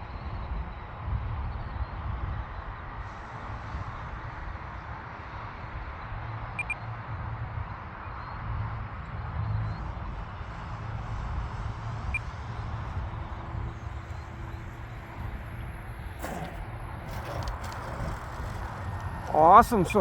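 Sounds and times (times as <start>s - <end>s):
wind buffeting microphone: 10.8s - 20.0s.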